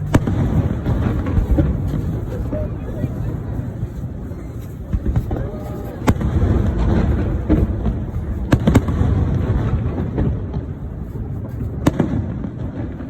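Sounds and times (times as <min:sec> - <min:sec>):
sharp firework bangs: 0:00.0 - 0:03.8, 0:04.8 - 0:13.0
low rumble of fireworks: 0:00.0 - 0:13.0.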